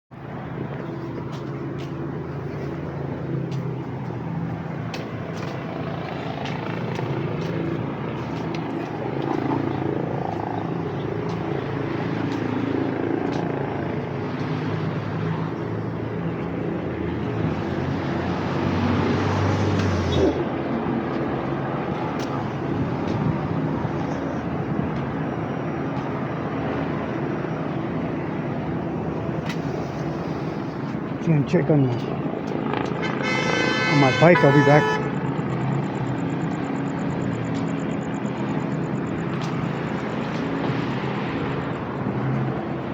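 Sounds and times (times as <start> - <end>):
vehicle engines in street noise: 0.1 - 42.9
loud engine cutting off: 17.0 - 24.4.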